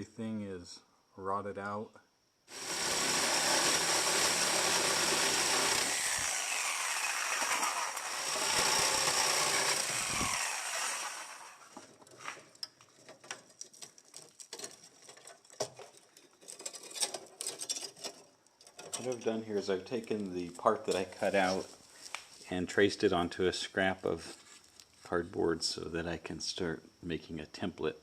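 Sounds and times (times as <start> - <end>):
power tool cutting metal: 2.5 - 11.7.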